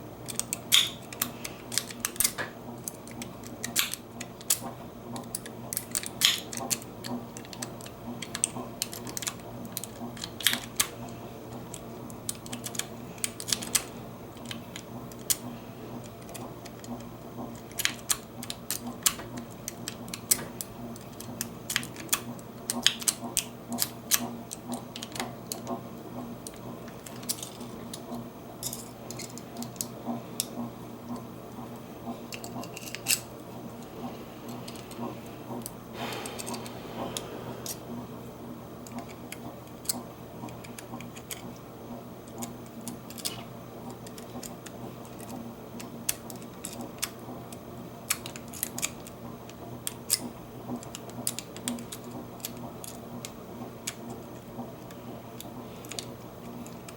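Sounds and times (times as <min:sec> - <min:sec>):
steady low hum: 0:00.0 - 0:56.9
lock pick clicking and scraping: 0:28.6 - 0:30.5, 0:32.3 - 0:33.3.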